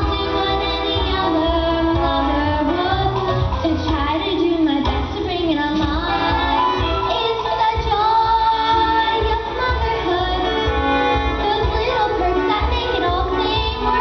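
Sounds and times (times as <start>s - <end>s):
backing music: 0.0s - 14.0s
young female voices singing: 0.0s - 14.0s.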